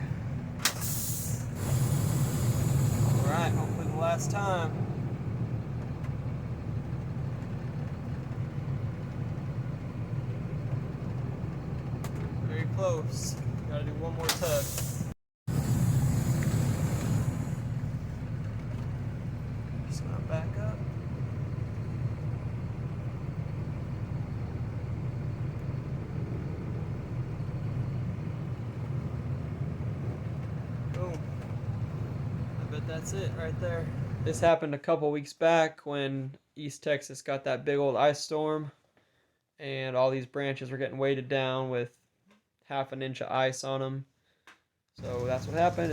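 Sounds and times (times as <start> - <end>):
truck engine rumbling: 0.0 - 34.5, 45.0 - 45.9.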